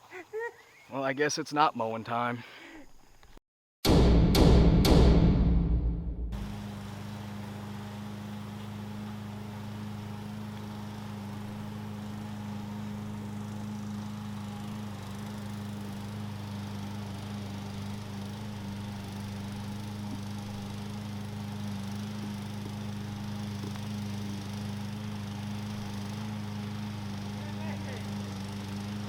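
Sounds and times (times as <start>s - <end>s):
lawn mower engine running: 6.4s - 29.0s.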